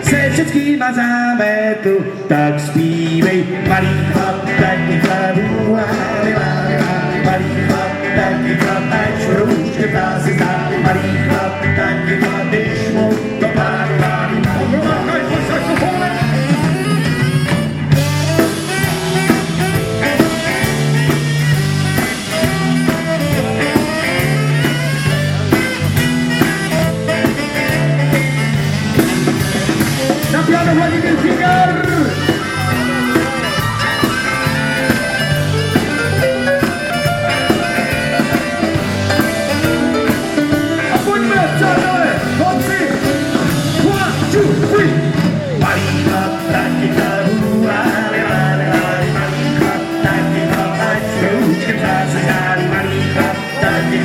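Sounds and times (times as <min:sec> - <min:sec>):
live rock and roll band: 0:00.0 - 0:54.0
walking bass line: 0:02.4 - 0:54.0
lead instrument solo: 0:14.8 - 0:46.0.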